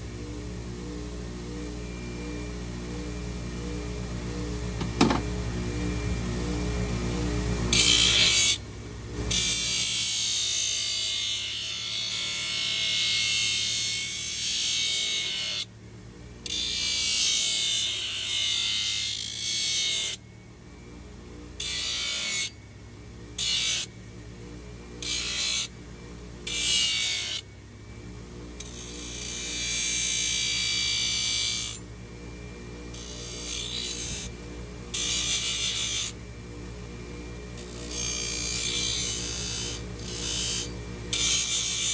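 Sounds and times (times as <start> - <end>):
small power tool whirring: 1.5 - 15.7, 16.4 - 22.7, 23.3 - 41.9.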